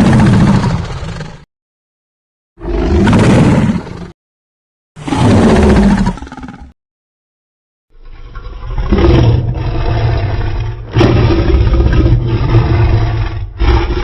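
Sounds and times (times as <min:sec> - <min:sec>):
deep rumbling monster roar: 0:08.3 - 0:14.0.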